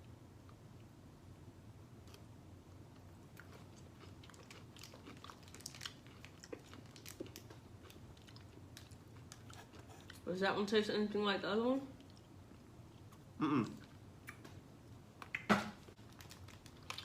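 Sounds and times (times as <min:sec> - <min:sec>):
chewing crunchy snack: 0:02.9 - 0:10.2, 0:15.2 - 0:17.0.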